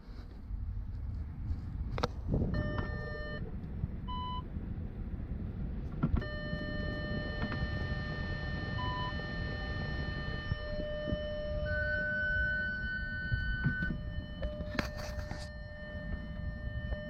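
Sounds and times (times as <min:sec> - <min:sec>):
low rumble: 0:00.0 - 0:17.0
car warning tone: 0:02.5 - 0:04.5, 0:06.2 - 0:17.0.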